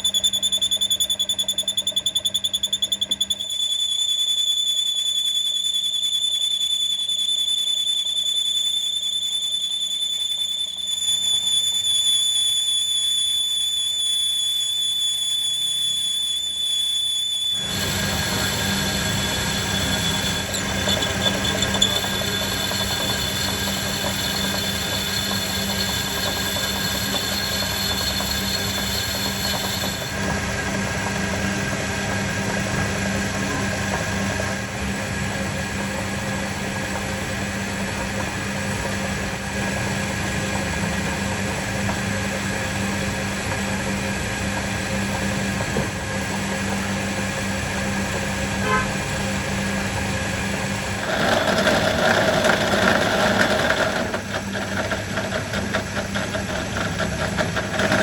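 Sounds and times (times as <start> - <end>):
thin high whine: 0.0 - 54.4
workshop machine humming: 12.5 - 58.0.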